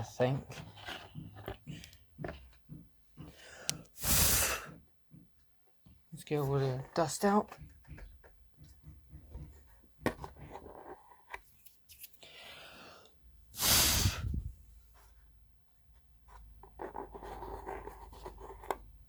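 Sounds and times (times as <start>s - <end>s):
rush of air: 13.6s - 14.6s.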